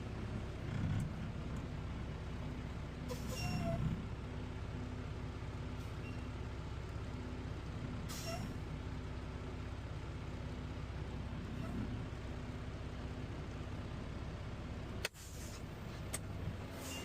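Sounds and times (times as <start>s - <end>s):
short air hisses: 15.1s - 15.6s, 16.8s - 17.0s.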